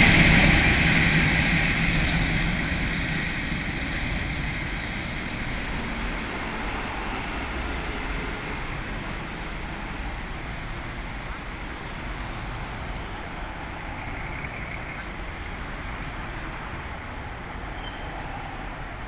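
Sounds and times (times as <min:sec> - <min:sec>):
train coaches rolling on rails: 0:00.0 - 0:19.0.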